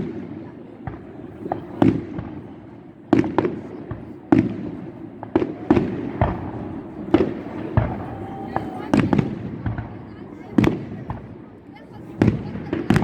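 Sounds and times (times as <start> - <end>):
fireworks sharp bangs: 0.0 - 13.0.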